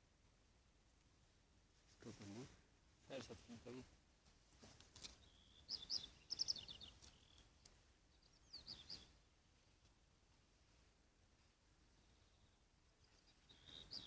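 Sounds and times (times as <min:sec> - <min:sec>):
small bird chirping: 0:05.0 - 0:09.2, 0:12.2 - 0:14.0.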